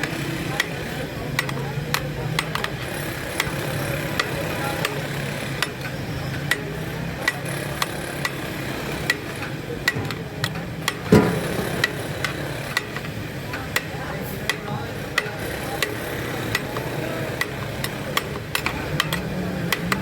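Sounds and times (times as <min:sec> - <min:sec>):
heavy knock: 0:09.9 - 0:12.8.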